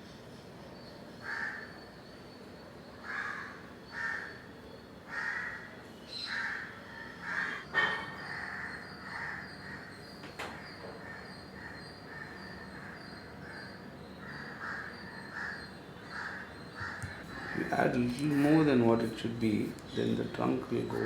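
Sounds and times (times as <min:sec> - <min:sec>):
crows cawing: 0:01.2 - 0:01.8, 0:03.0 - 0:04.5, 0:05.1 - 0:10.1, 0:10.9 - 0:18.8.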